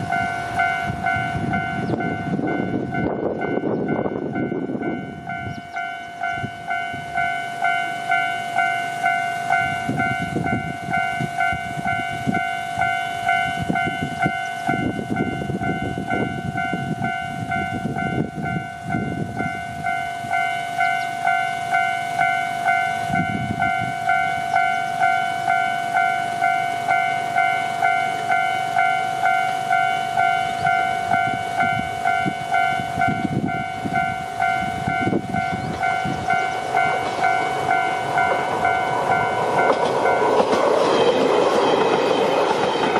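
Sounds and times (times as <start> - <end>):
crossing warning bell ringing: 0.0 - 42.9.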